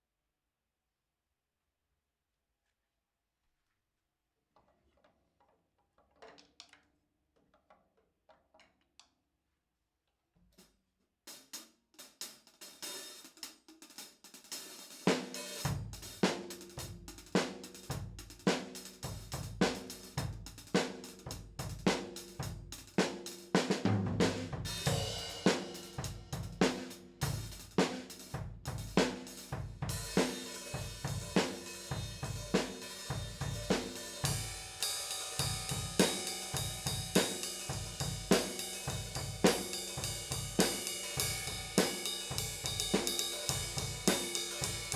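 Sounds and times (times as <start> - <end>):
snare drum beat: 14.6 - 44.9
bass drum beat: 15.7 - 23.0, 23.6 - 44.9
cymbals crashing: 24.7 - 26.8, 29.9 - 44.9
hi-hat keeping time: 24.7 - 44.9.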